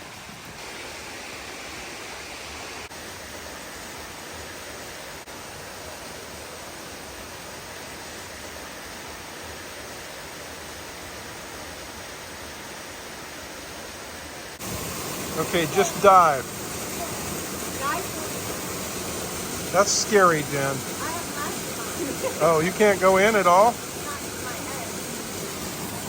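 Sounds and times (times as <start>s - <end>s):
waterfall rushing: 12.9s - 26.0s.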